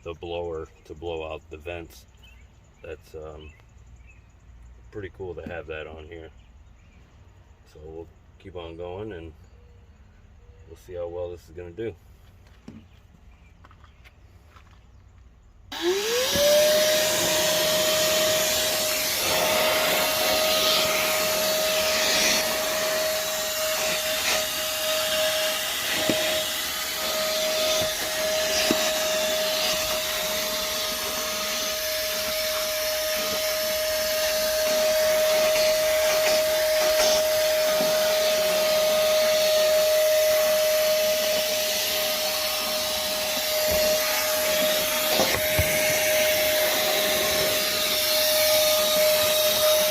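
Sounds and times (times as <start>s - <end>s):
vacuum motor whine: 15.7s - 49.9s.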